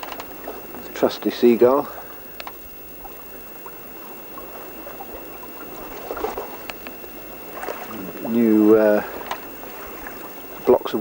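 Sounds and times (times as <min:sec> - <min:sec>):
water rushing along boat hull: 0:00.0 - 0:11.0
light clicks: 0:02.3 - 0:02.6
water splash: 0:03.0 - 0:06.6, 0:07.5 - 0:08.4.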